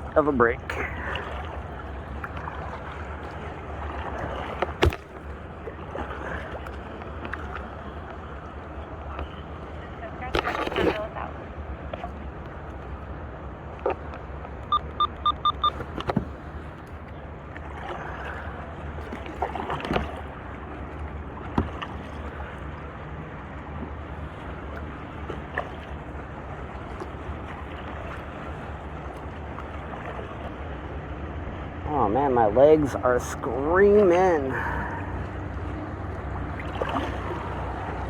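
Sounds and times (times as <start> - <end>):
wind and water washing: 0.0 - 38.0
short high electronic beeps: 14.7 - 15.7.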